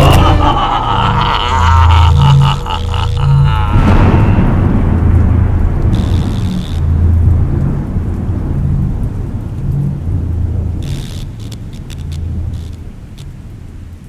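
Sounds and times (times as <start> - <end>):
deep rumble: 0.0 - 14.0
crash: 3.7 - 6.5.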